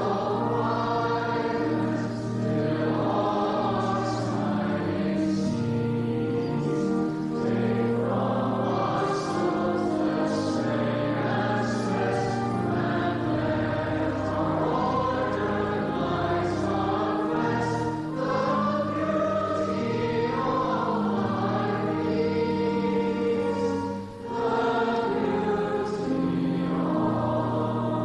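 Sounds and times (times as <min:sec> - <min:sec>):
choir singing: 0:00.0 - 0:28.0
pipe organ: 0:00.0 - 0:28.0.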